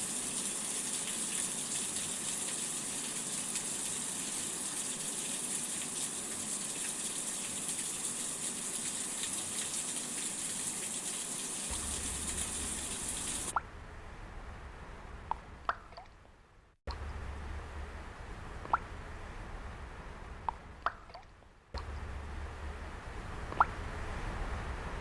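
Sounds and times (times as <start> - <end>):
steady rain hiss: 0.0 - 13.5.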